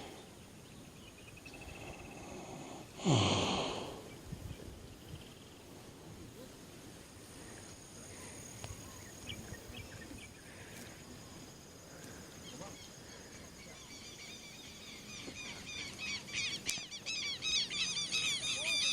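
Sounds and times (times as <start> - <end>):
high insect drone: 0.0 - 18.9
bird calling: 7.5 - 18.9.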